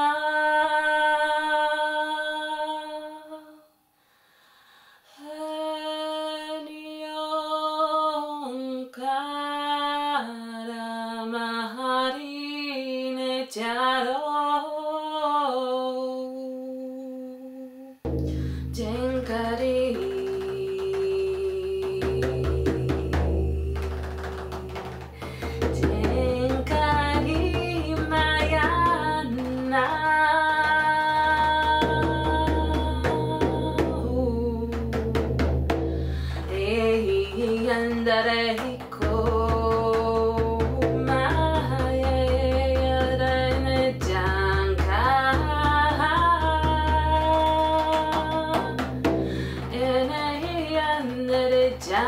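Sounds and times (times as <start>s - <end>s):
woman singing wordless notes: 0.0s - 3.8s, 5.1s - 52.0s
light percussion strikes: 18.0s - 34.1s
drum beats: 18.1s - 52.0s.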